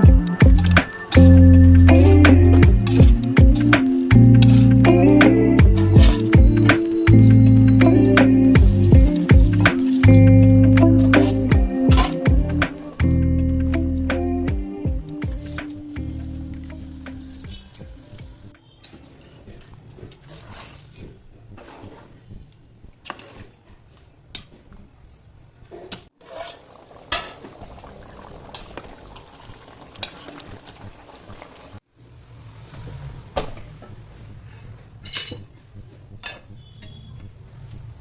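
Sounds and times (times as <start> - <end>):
metal utensils scraping cookware: 3.6 - 5.0, 11.0 - 12.3, 35.0 - 35.5.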